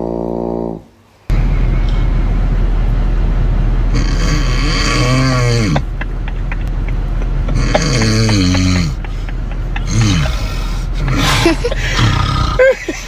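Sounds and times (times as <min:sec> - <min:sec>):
steady low hum: 0:00.0 - 0:13.0
man snoring loudly: 0:04.0 - 0:05.8, 0:07.5 - 0:09.0, 0:09.8 - 0:12.9.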